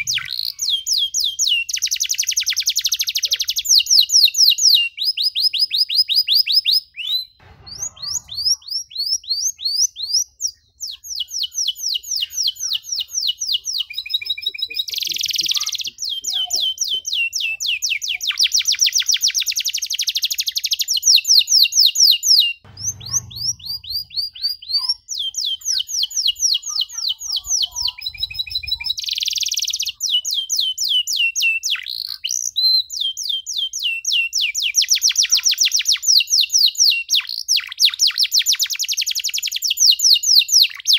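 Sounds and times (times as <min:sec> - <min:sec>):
canary trilling: 0:00.0 - 0:04.1, 0:06.9 - 0:20.7, 0:22.6 - 0:34.2.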